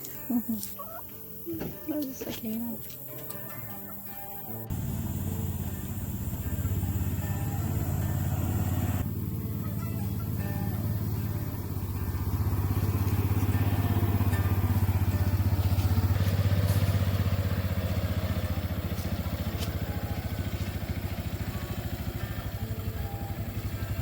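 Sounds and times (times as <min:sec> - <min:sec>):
small engine running: 0:04.6 - 0:24.0.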